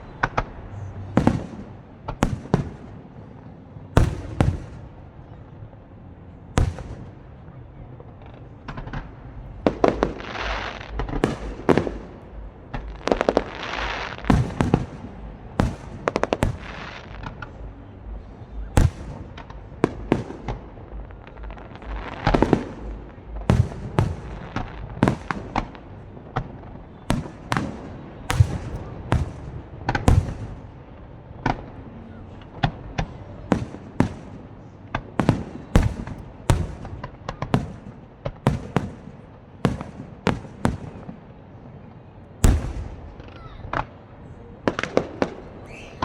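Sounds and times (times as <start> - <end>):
fireworks bangs: 0.0 - 5.3, 6.5 - 41.3, 42.4 - 46.0
fireworks crackling hiss: 9.8 - 12.2, 12.8 - 15.0.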